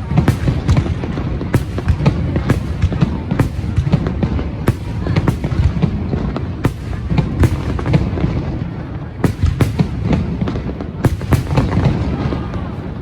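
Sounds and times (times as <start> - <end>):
firework cracks: 0.0 - 13.0
low booming of shells bursting: 11.0 - 12.0.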